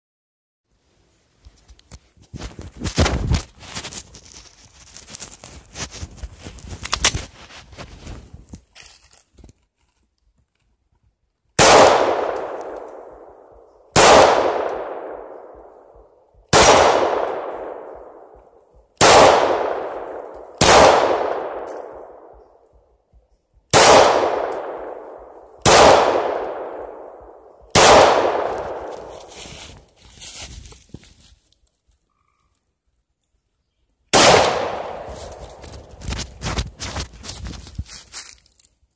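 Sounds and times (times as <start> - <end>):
pistol shots: 11.6 - 15.7, 16.5 - 18.3, 19.0 - 22.4, 23.7 - 29.2, 34.1 - 36.0.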